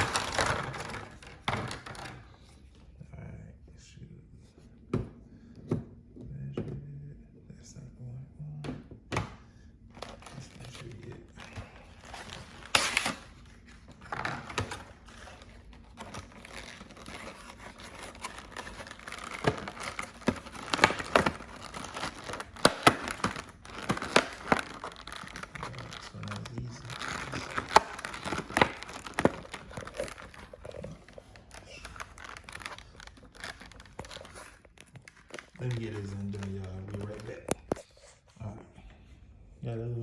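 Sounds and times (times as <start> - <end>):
plastic packaging crinkling: 0.0 - 2.8, 9.9 - 37.9.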